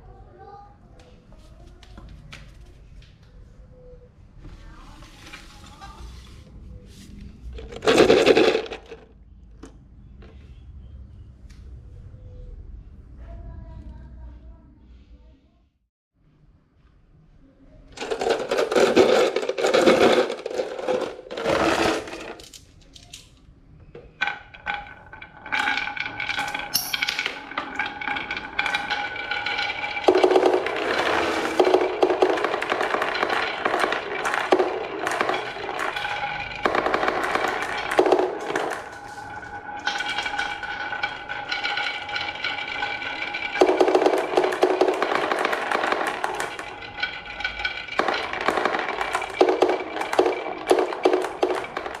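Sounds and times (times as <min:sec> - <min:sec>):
marbles clattering down wooden run: 0:07.5 - 0:09.1, 0:18.0 - 0:22.6, 0:24.0 - 0:52.0.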